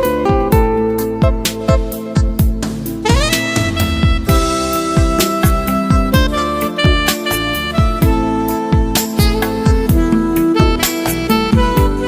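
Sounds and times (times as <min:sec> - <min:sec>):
deep kick drum beat: 0:00.0 - 0:10.9, 0:11.5 - 0:12.0
held melody notes: 0:00.0 - 0:12.0.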